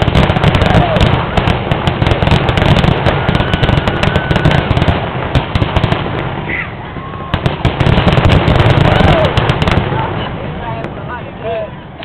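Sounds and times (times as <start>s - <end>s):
fireworks bangs and crackling: 0.0s - 12.0s.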